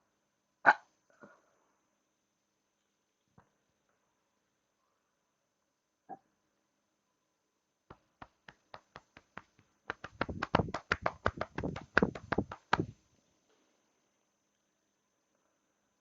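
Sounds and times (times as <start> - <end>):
sharp hand taps: 7.9 - 12.9.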